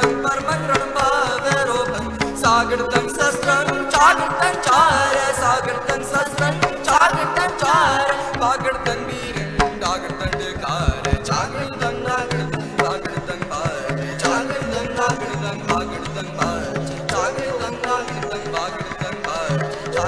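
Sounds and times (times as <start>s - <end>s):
bowed string melody: 0.0s - 20.0s
sustained harmonium: 0.0s - 20.0s
tabla rhythm: 0.0s - 20.0s.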